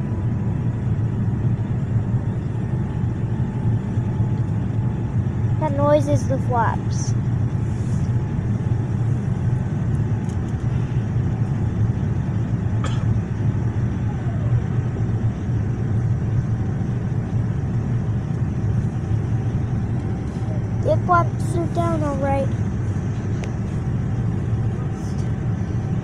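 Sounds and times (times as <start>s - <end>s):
airplane cabin rumble: 0.0s - 26.0s.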